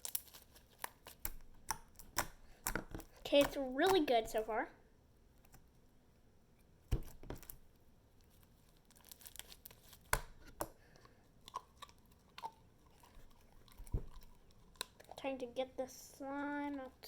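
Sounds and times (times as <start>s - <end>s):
slime popping and tearing: 0.0s - 4.1s, 8.8s - 10.8s.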